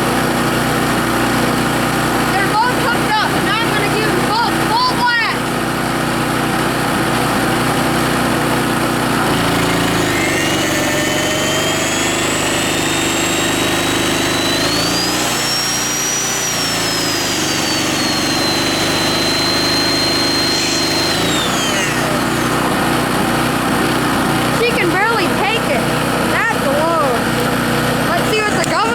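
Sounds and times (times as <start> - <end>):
generator engine running: 0.0 - 28.9
electric motor whining: 6.9 - 28.9.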